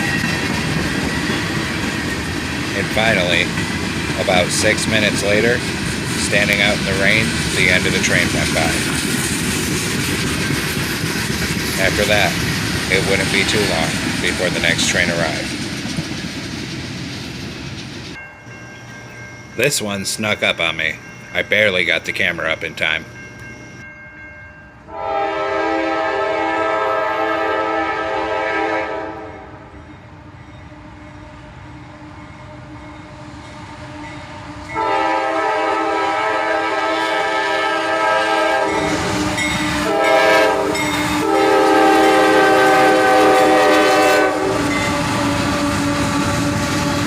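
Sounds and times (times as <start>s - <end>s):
train rumbling on rails: 0.0s - 47.0s
locomotive air horn blasts: 24.9s - 29.5s, 34.7s - 46.9s.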